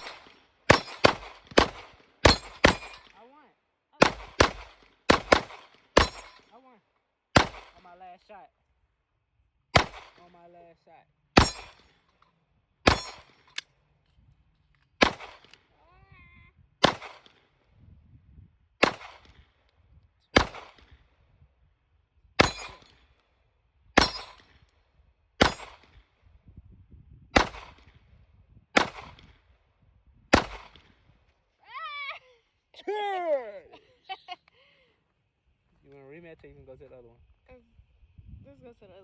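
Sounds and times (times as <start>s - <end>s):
pistol shots at steel targets: 0.0s - 3.2s, 4.0s - 6.5s, 7.4s - 7.9s, 9.8s - 10.3s, 11.4s - 12.0s, 12.8s - 13.6s, 15.0s - 15.6s, 16.8s - 17.4s, 18.8s - 19.4s, 20.3s - 20.9s, 22.4s - 23.1s, 24.0s - 24.6s, 25.4s - 26.0s, 27.4s - 27.9s, 28.8s - 29.3s, 30.3s - 30.9s.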